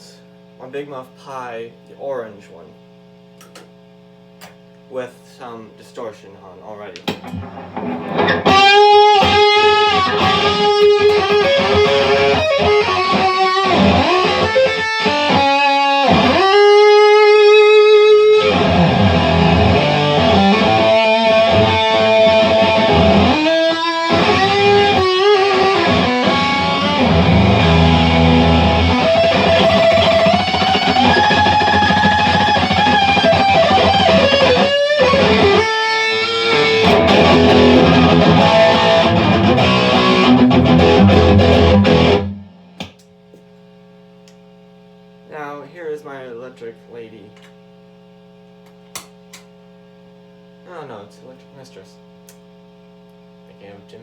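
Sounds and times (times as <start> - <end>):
fuzzed electric guitar riffs: 7.2 - 43.0.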